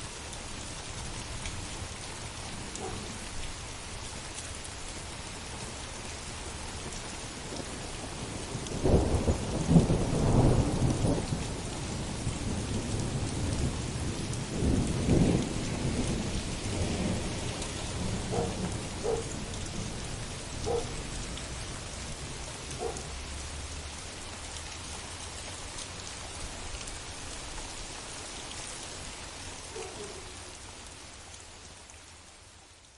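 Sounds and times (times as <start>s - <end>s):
heavy rain falling: 0.0s - 32.9s
rolling thunder: 8.8s - 21.3s.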